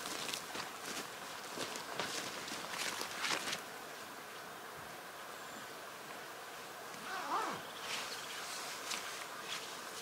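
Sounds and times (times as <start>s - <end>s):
scuffing rustling noises: 0.0s - 3.6s, 7.8s - 10.0s
soft steady hiss: 0.0s - 10.0s.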